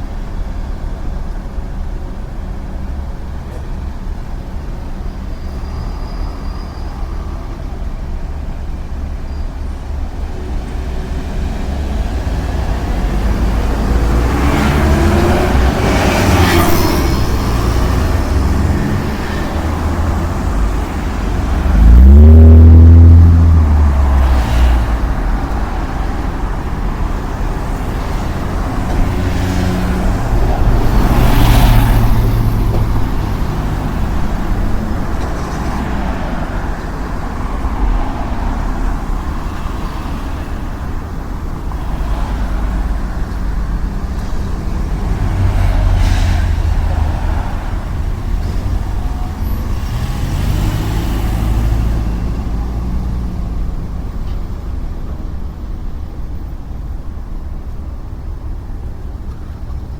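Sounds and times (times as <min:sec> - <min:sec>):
road traffic rumble: 0:00.0 - 0:59.9
cars swishing past: 0:10.1 - 0:54.8
vehicle passing close: 0:10.6 - 0:40.8, 0:41.6 - 0:54.2.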